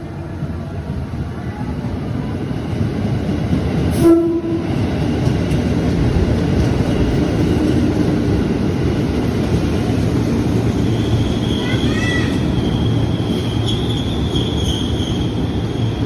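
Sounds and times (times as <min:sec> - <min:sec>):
electric train rumbling: 0:00.0 - 0:16.0
train horn note: 0:04.0 - 0:04.8.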